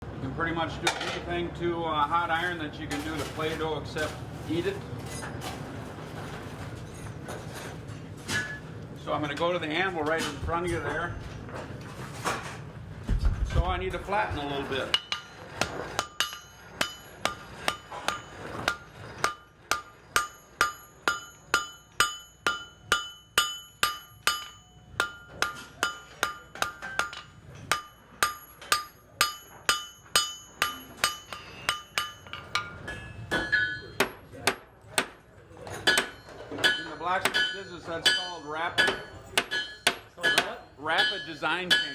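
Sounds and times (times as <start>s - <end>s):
hammer striking iron on anvil: 14.9s - 35.2s, 35.8s - 41.9s.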